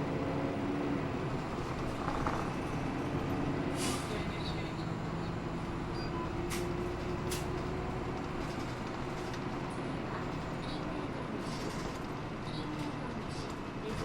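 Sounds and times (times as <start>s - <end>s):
bus diesel engine hum: 0.0s - 14.0s
road noise: 0.0s - 14.0s.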